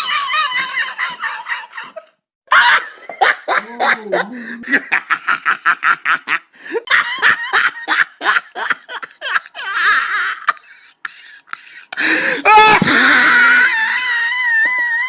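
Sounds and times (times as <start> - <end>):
person laughing: 0.0 - 15.0
breathy intake: 10.7 - 13.2.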